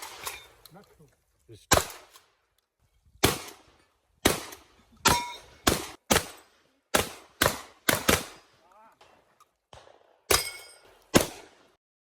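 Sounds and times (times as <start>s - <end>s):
shotgun shots: 1.7s - 2.2s, 3.2s - 11.8s.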